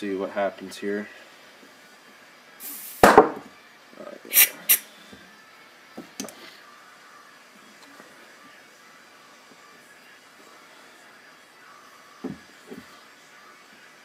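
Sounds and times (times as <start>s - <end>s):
compressed air blasts: 2.6s - 3.4s, 4.3s - 4.9s
loud sharp knock: 3.0s - 3.5s.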